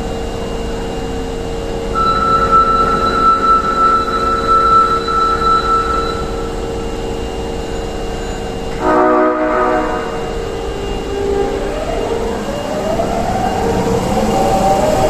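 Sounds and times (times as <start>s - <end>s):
train motor whine: 0.0s - 15.0s
train horn blast: 8.7s - 11.6s.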